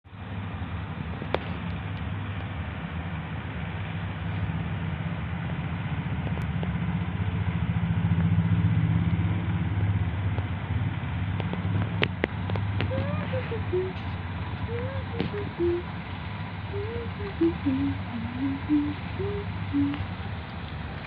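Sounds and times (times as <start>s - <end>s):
cat purring: 16.7s - 20.0s.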